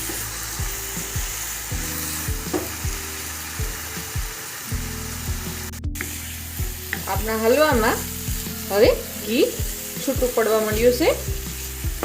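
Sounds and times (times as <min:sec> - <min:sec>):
food sizzling in ghee: 0:00.0 - 0:12.0.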